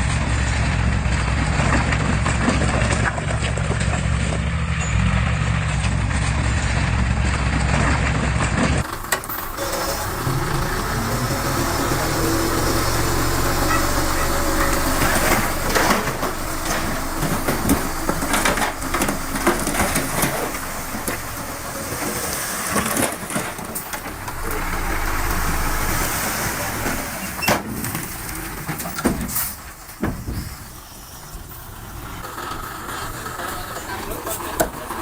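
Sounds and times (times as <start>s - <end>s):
diesel machinery engine rumble: 0.0s - 35.0s
knocks and clanks: 8.8s - 30.4s.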